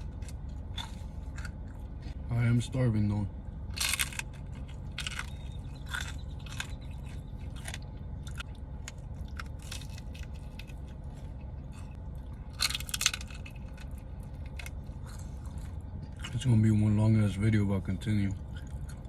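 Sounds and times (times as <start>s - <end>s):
crunching and chewing: 0.0s - 2.2s, 3.4s - 19.0s
steady low hum: 0.0s - 19.0s.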